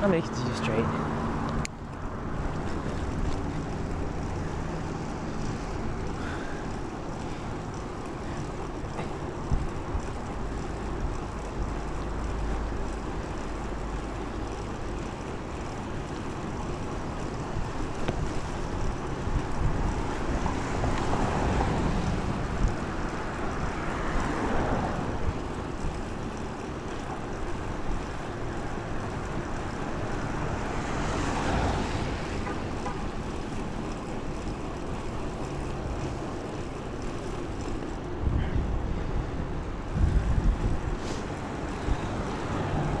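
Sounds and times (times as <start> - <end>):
wind buffeting microphone: 14.4 - 43.0.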